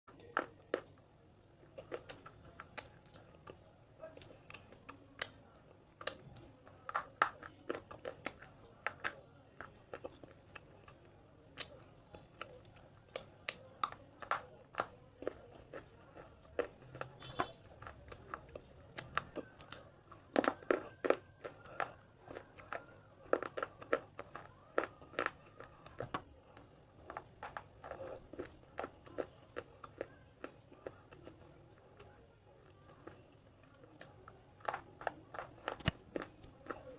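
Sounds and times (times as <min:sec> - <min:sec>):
brittle crunching: 0:33.0 - 0:36.9.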